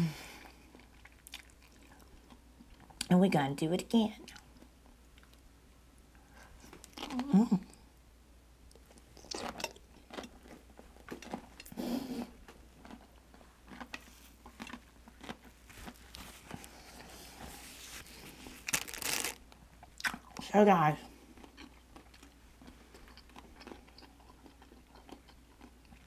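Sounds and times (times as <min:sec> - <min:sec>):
person chewing wetly: 0:00.5 - 0:03.1, 0:08.7 - 0:17.1, 0:18.7 - 0:20.4, 0:21.2 - 0:26.0
food crunching: 0:00.6 - 0:03.1, 0:06.6 - 0:07.3, 0:08.7 - 0:17.2, 0:18.0 - 0:20.5, 0:21.1 - 0:26.0.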